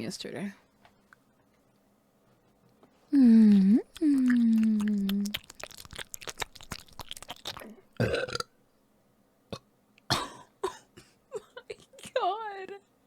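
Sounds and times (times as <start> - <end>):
wet mouth clicks and chewing: 3.5 - 7.8
woman burping: 7.6 - 8.5.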